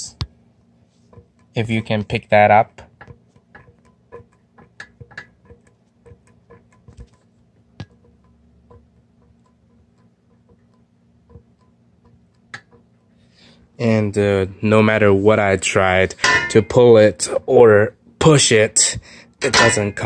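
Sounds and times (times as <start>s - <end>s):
low steady hum: 0.0s - 20.0s
light clicks and ticks: 7.8s - 13.1s.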